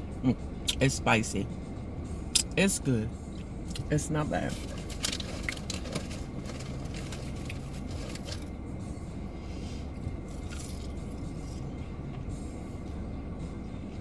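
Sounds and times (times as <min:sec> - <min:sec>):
car engine idling: 0:00.0 - 0:14.0
food being handled and eaten: 0:04.5 - 0:08.5, 0:09.9 - 0:11.8.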